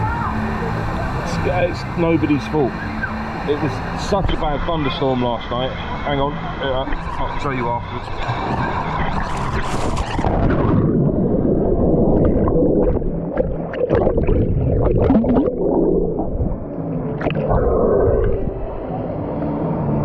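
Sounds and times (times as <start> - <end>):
water churning and gurgling: 0.0 - 20.0
water splash: 8.1 - 18.9.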